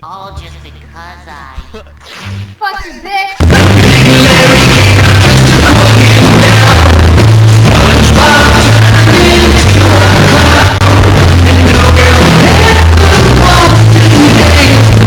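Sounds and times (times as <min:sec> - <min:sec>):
person singing: 0:03.0 - 0:15.0
music with distorted bass: 0:03.4 - 0:15.0.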